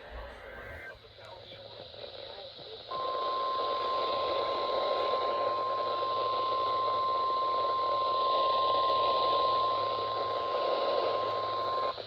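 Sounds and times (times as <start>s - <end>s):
radio static hiss: 0.0s - 12.0s
long steady alarm beep: 2.9s - 12.0s.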